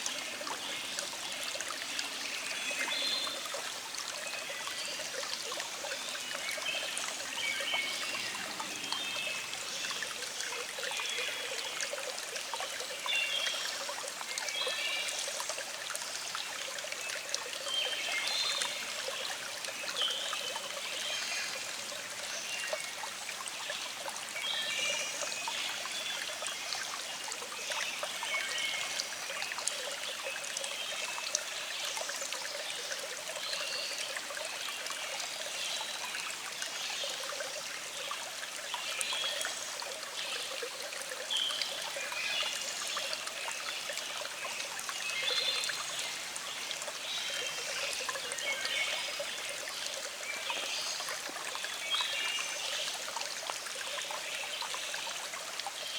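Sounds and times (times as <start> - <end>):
stream babbling over rocks: 0.0 - 55.9.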